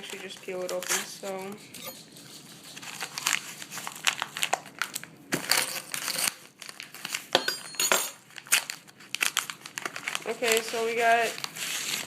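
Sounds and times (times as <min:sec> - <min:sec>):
packaging crinkling and crackling: 0:00.0 - 0:07.4, 0:08.2 - 0:12.0
package tearing open: 0:02.8 - 0:07.3, 0:08.3 - 0:12.0.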